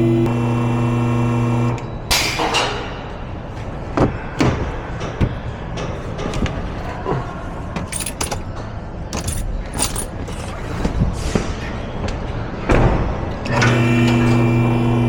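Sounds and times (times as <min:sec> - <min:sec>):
metal objects clinking: 0:07.8 - 0:10.7.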